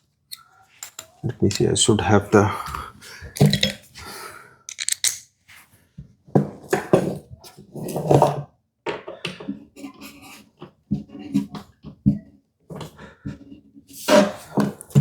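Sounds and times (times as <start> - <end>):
small metal tools clinking: 3.4 - 3.9, 4.7 - 5.2.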